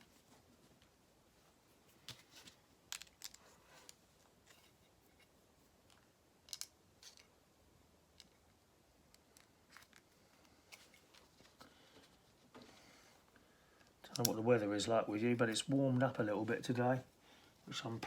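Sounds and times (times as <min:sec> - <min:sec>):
plastic building bricks clicking: 0:02.9 - 0:04.0, 0:05.8 - 0:07.3, 0:08.1 - 0:08.5.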